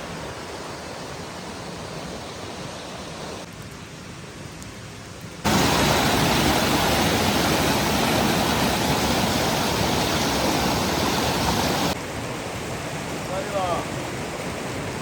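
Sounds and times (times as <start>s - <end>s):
rushing river water: 5.4s - 15.0s.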